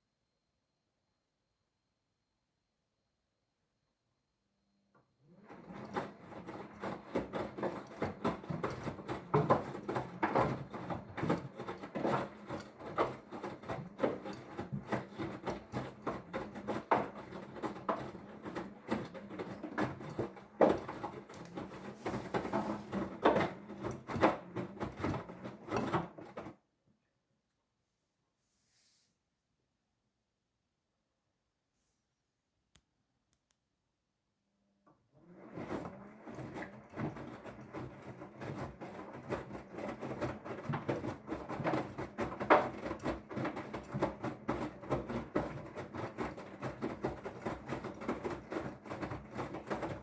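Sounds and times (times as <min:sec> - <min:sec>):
washer-dryer motor hum: 0:05.2 - 0:26.6, 0:35.2 - 0:50.0
drum knocks and rubs: 0:05.5 - 0:26.5, 0:35.5 - 0:50.0.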